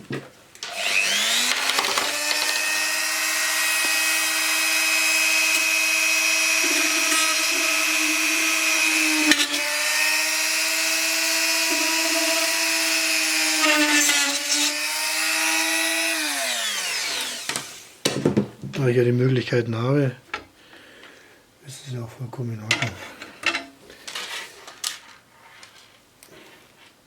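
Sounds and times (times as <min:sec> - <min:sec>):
electric drill drilling metal: 0:00.6 - 0:17.9.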